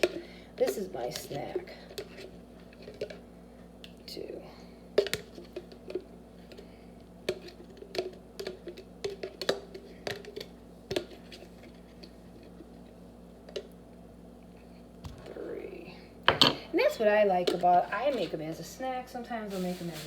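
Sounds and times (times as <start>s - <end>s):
spoon scraping and tapping jar: 7.3s - 11.4s.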